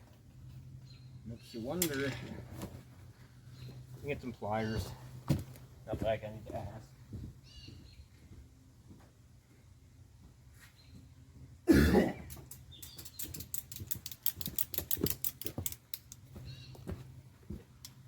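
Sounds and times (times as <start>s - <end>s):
sharp clicks and taps: 12.3s - 17.0s.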